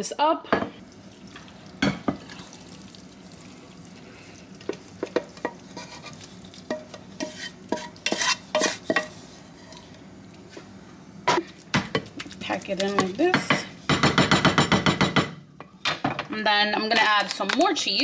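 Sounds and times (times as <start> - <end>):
spoon stirring thick filling: 1.2 - 10.7.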